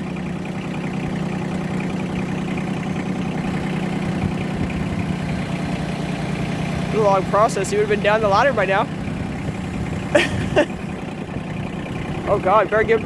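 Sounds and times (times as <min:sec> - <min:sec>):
loader engine humming at low revs: 0:00.0 - 0:13.0.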